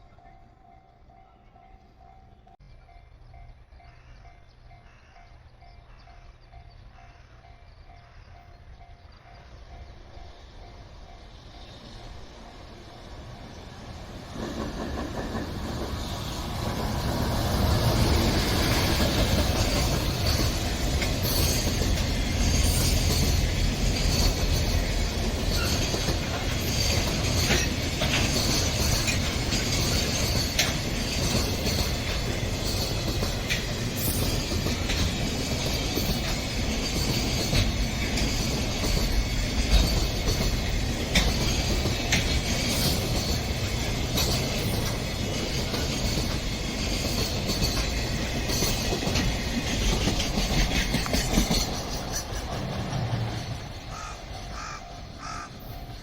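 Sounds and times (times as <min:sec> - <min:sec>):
train rumbling past: 0:00.0 - 0:56.0
wheels clicking over rail joints: 0:12.3 - 0:56.0.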